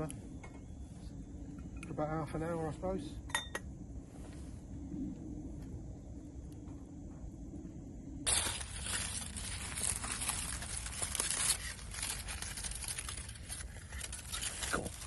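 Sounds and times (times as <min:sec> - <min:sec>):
foil crinkling and tearing: 0:08.3 - 0:15.0.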